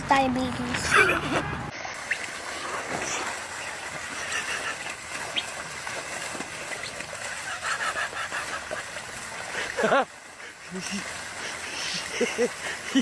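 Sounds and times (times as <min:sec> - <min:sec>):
birds chirping: 0:03.5 - 0:05.7.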